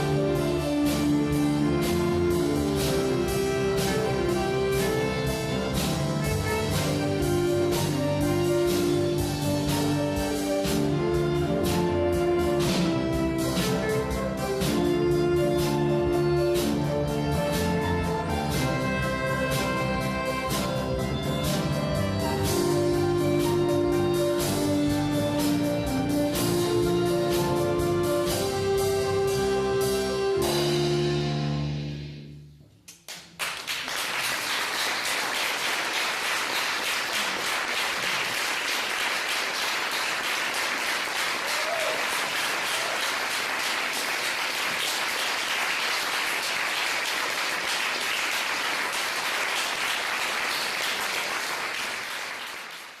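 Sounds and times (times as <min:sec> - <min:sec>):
audience applause: 0:33.1 - 0:53.0.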